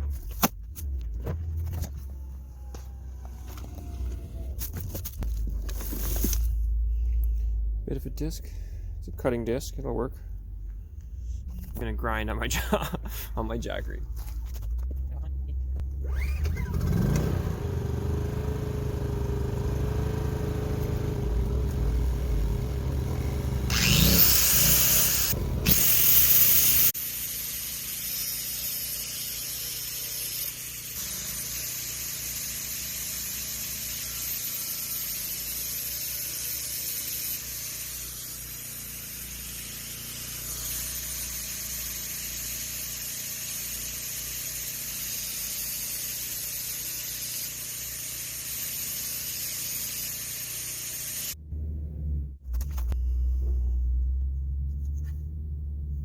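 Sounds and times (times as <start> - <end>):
die grinder grinding metal: 15.8 - 51.4.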